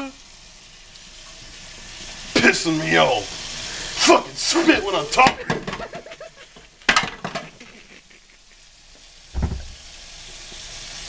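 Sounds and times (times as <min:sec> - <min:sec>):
tap water running: 0:00.9 - 0:11.0
dishes clattering in a sink: 0:04.8 - 0:06.3, 0:06.9 - 0:07.8, 0:09.4 - 0:09.9
dull thump: 0:09.4 - 0:09.9.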